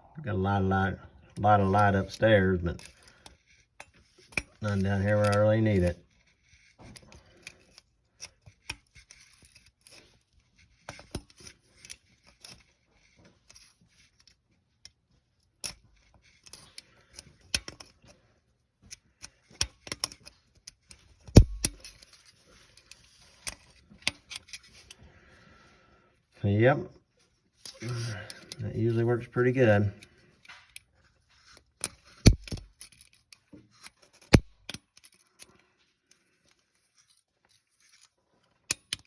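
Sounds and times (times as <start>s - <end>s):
center punch snapping on bolt: 21.3s - 21.9s, 32.2s - 32.7s.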